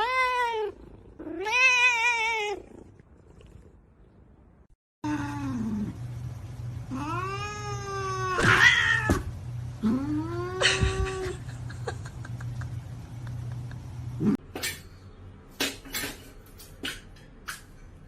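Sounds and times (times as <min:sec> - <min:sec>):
steady low hum: 0:05.1 - 0:14.4
cat yowling: 0:06.9 - 0:09.2.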